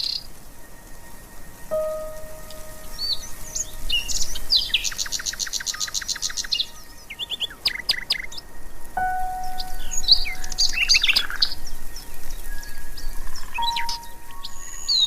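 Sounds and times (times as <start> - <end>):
bird chirps and whistled calls: 9.0 - 15.0.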